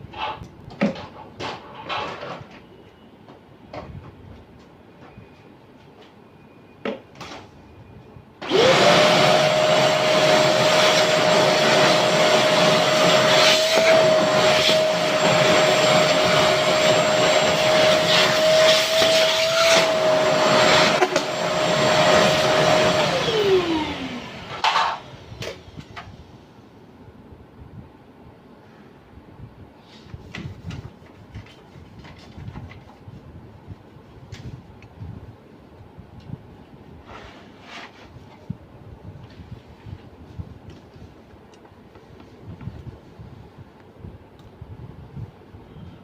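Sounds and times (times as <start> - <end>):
vacuum cleaner running: 8.4 - 26.2.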